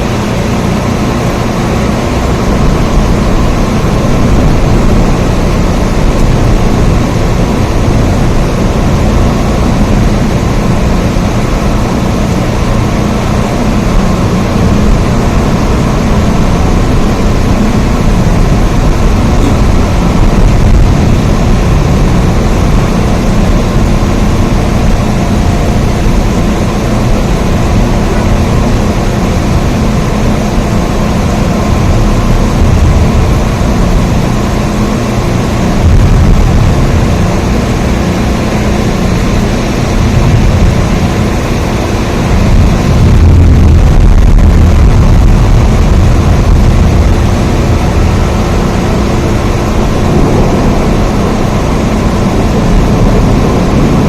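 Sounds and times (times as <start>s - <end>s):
dense rain with low rumble: 0.0s - 54.0s.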